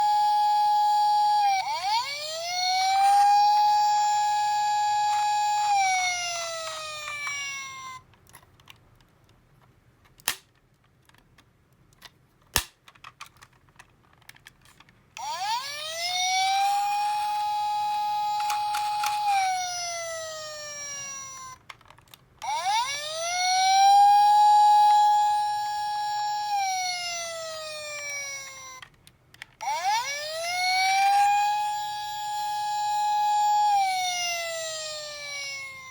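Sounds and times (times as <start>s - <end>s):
toy siren wailing: 0.0s - 8.0s, 15.2s - 21.7s, 22.4s - 29.0s, 29.6s - 35.9s.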